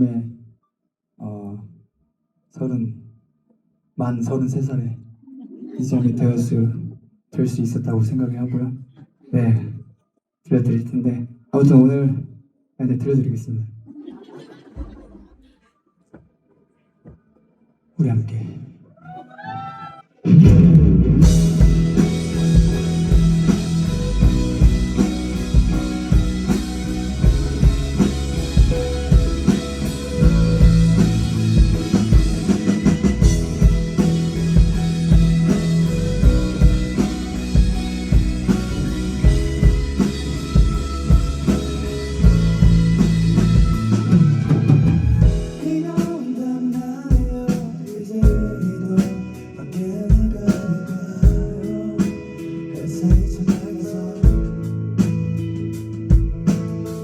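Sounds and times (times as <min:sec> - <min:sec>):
drums and cymbals: 0:20.3 - 0:52.3, 0:53.1 - 0:57.0
live rock band playing: 0:20.3 - 0:57.0.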